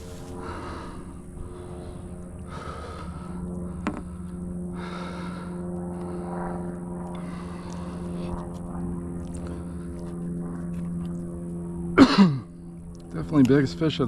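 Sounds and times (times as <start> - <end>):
man breathing hard: 0.0 - 10.4
low motor-like hum: 0.0 - 14.0.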